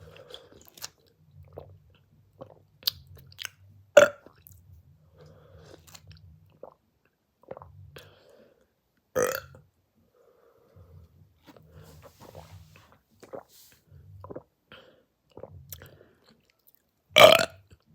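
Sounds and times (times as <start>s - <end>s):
chewing and mouth sounds: 0.0s - 1.8s
soft low rumbles: 10.7s - 14.4s.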